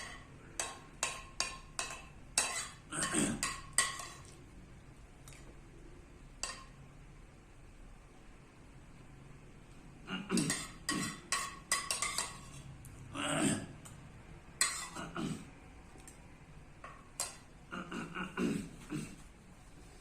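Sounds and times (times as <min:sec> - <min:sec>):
person clearing throat: 0:02.9 - 0:03.5, 0:10.0 - 0:11.2, 0:13.1 - 0:13.8, 0:14.9 - 0:15.5, 0:17.7 - 0:19.3.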